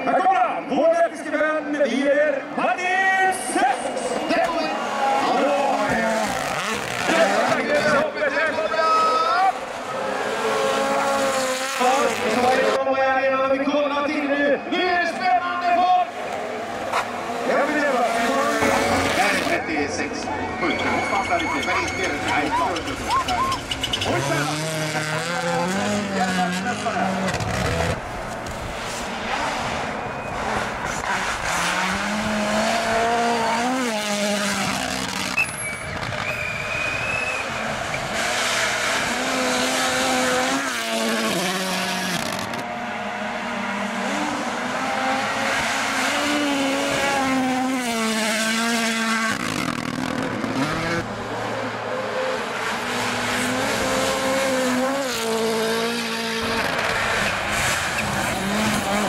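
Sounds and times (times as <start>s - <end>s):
rally car engines revving: 0.0s - 59.0s.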